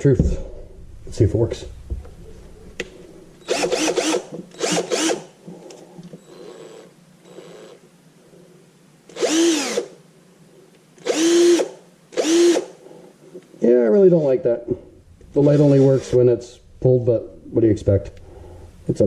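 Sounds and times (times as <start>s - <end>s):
cordless drill motor whining: 3.4s - 5.3s, 6.2s - 7.8s, 9.1s - 10.0s, 11.0s - 12.8s.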